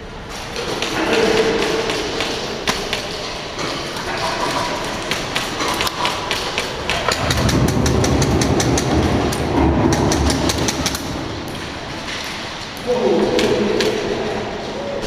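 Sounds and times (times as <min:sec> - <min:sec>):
airsoft guns firing: 0:00.6 - 0:03.4, 0:04.4 - 0:11.4.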